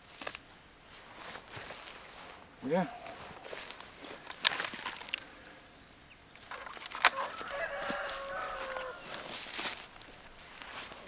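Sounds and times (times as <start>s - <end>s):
rooster crowing: 6.9s - 10.1s.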